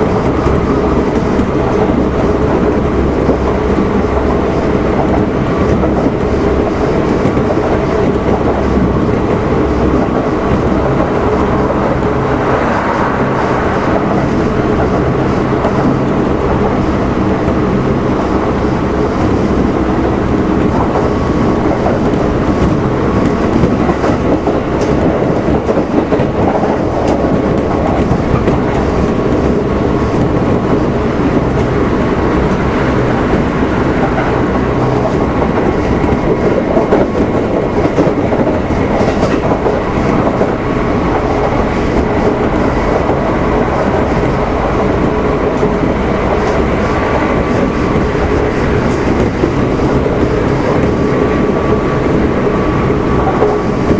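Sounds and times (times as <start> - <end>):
train wheel and rail noise: 0.0 - 53.9.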